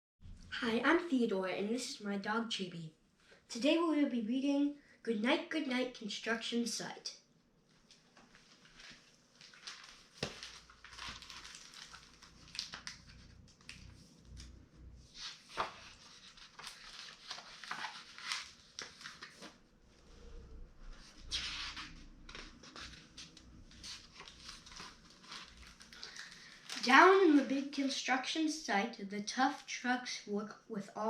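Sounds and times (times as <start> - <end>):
paper rustling and crinkling: 7.8 - 19.6, 20.9 - 27.8.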